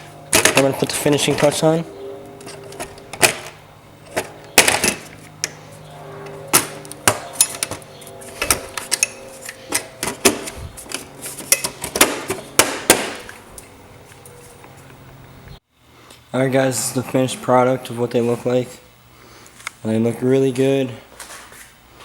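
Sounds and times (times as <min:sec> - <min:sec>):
clicks and knocks of tools: 0:06.2 - 0:12.4
faint steady hum: 0:13.3 - 0:22.0.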